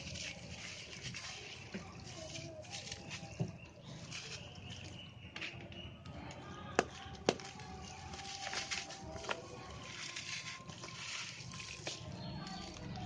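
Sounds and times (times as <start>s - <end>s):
sand-cement chunks crunching: 7.2s - 12.8s.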